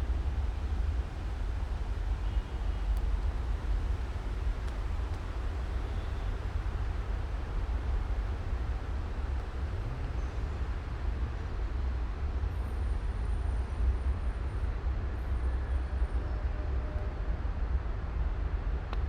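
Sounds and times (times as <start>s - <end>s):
low outdoor rumble: 0.0s - 19.0s.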